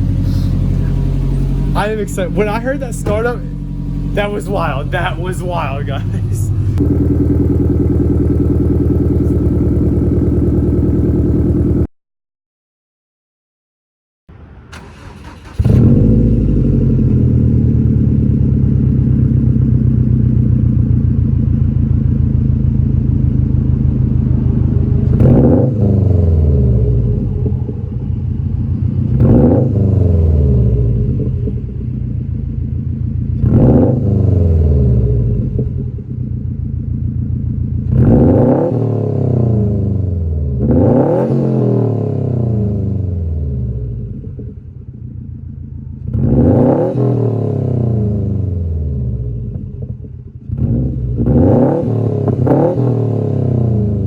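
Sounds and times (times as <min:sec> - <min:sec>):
car engine idling: 0:00.0 - 0:11.9, 0:14.3 - 0:25.4, 0:26.4 - 0:29.4, 0:30.6 - 0:33.7, 0:35.0 - 0:38.1, 0:43.3 - 0:46.2
engine throttle blips: 0:00.0 - 0:11.9.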